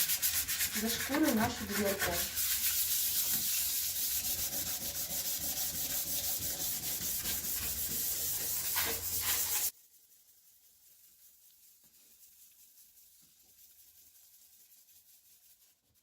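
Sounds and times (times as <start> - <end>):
sandpaper rubbing on a door: 0.0 - 16.0.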